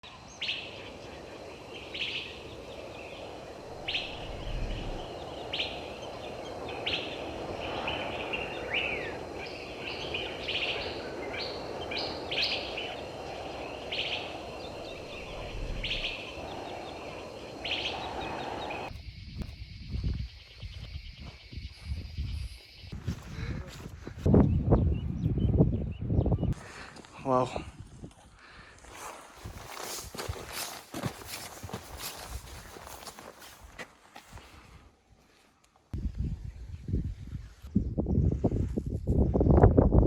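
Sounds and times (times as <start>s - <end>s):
birds calling: 0.0s - 18.9s
background hiss: 0.2s - 19.4s.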